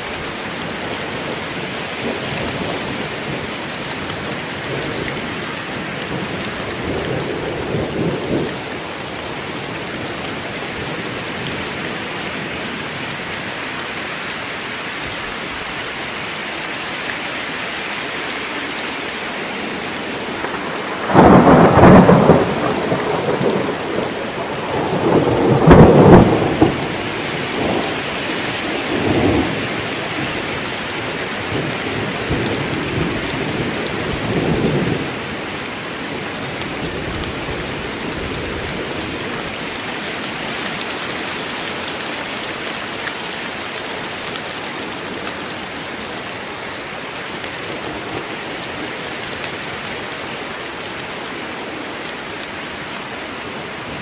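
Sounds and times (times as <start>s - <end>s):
heavy rain in a forest: 0.0s - 54.0s
thunder rumbling: 19.4s - 40.8s.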